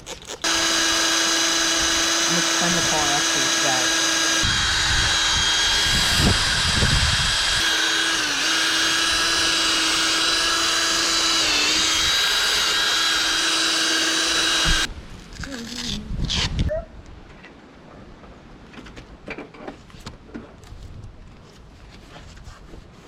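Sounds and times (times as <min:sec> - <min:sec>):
power drill polishing plastic: 0:00.0 - 0:14.9.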